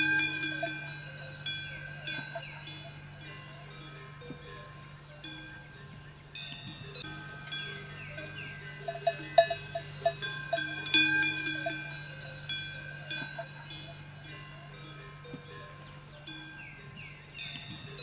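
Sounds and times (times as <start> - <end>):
small metal bells clanking: 0.0 - 18.0
steady low hum: 0.0 - 18.0.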